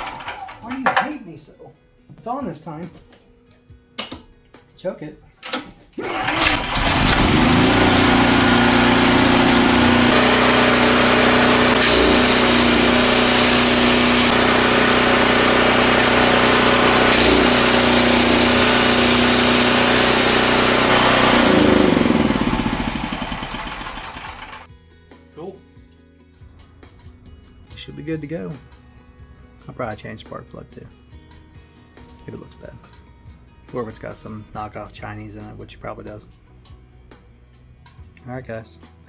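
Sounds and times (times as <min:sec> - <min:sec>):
portable generator engine running: 0:00.0 - 0:00.7, 0:06.0 - 0:24.7.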